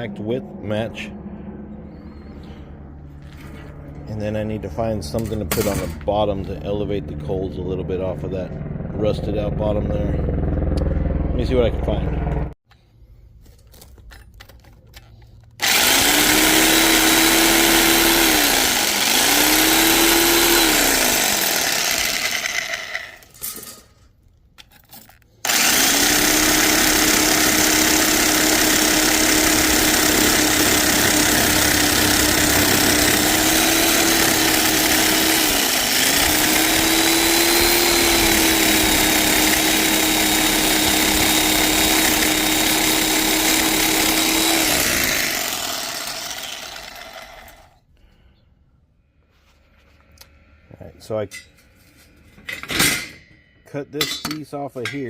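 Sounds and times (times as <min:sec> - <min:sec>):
electric power tool cutting metal: 0:15.6 - 0:23.6, 0:25.4 - 0:47.8.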